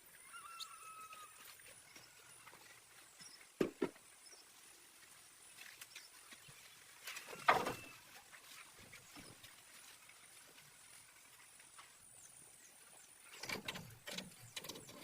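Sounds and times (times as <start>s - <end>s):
knocks of objects being handled: 3.6s - 4.0s.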